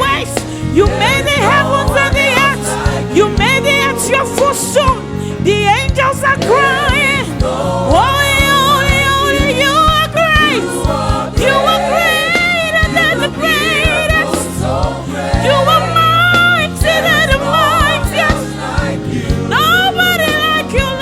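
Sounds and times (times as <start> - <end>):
band with steady drum beat: 0.0 - 5.2, 5.8 - 21.0
backing choir: 0.0 - 21.0
person singing with vibrato: 0.6 - 5.6.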